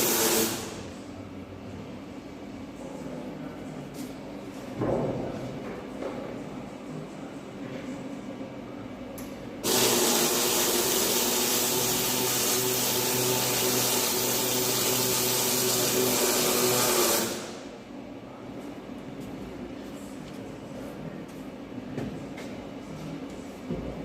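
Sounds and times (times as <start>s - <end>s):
welding arc hissing and crackling: 0.0s - 0.8s, 9.6s - 17.6s.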